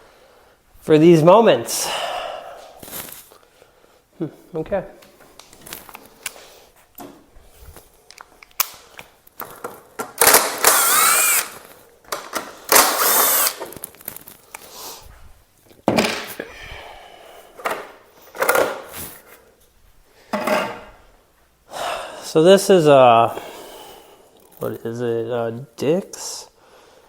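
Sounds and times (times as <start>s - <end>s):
drill clicks: 10.1s - 11.6s, 12.2s - 13.8s
power drill whining: 10.2s - 11.6s, 12.7s - 13.7s.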